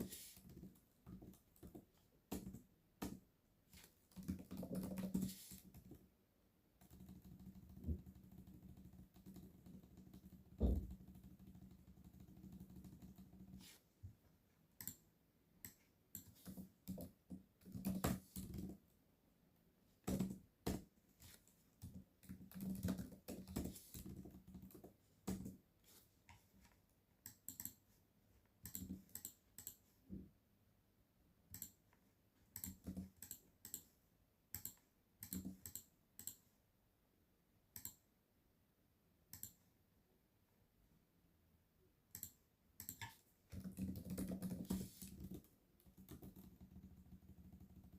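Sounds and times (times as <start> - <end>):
typing on computer keyboard: 4.1 - 6.0, 6.8 - 13.6, 15.6 - 18.8, 21.8 - 25.6, 27.2 - 27.8, 28.6 - 29.8, 32.6 - 33.9, 34.5 - 36.4, 42.1 - 47.9.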